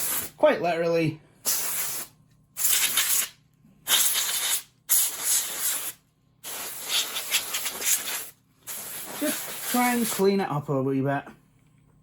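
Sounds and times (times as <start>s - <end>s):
compressed air hissing: 0.0s - 0.4s, 1.4s - 10.2s.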